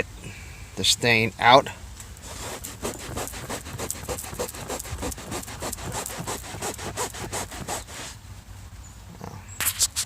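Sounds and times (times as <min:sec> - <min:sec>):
cloth scrubbing seat cover: 0:02.2 - 0:08.2.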